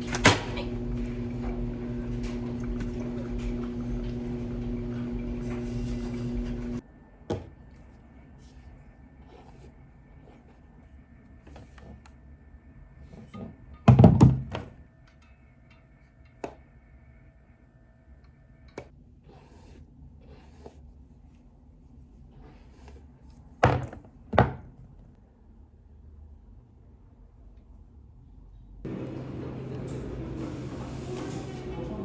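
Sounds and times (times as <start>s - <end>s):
household thuds and knocks: 13.4s - 14.8s, 23.6s - 25.0s.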